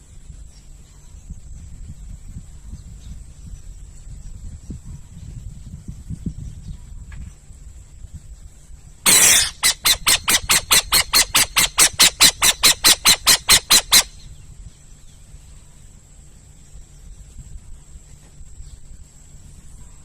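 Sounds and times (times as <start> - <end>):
owl screeching: 9.1 - 14.2.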